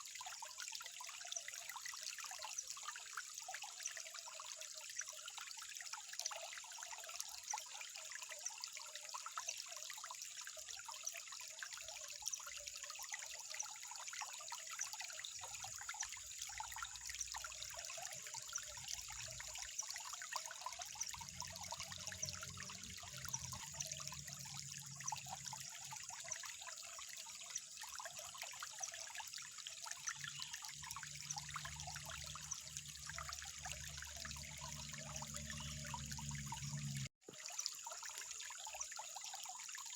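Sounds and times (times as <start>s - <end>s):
water trickling: 0.0s - 39.9s.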